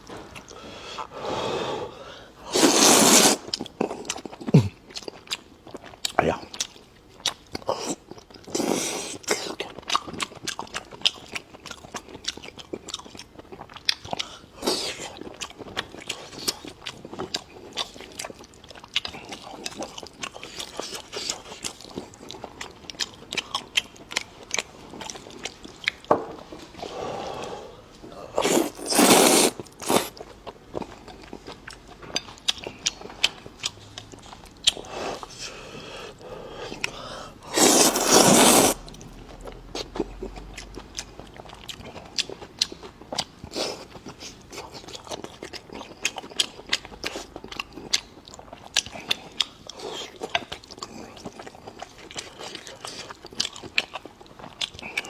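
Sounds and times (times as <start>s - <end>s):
chewing and crunching: 3.4s - 26.9s, 28.0s - 55.0s
wet mouth clicks: 28.4s - 30.1s, 36.8s - 38.8s.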